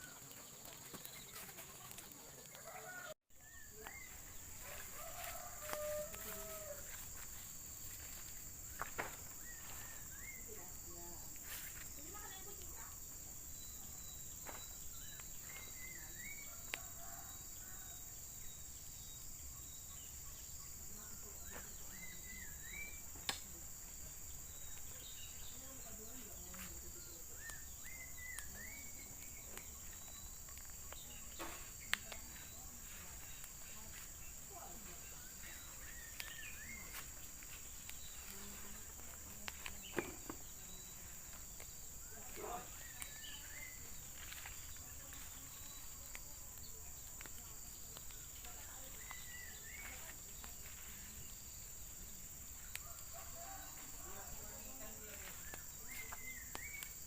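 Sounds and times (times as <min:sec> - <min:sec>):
faint chirps: 0:00.0 - 0:57.0
insect chorus buzzing: 0:00.0 - 0:57.0.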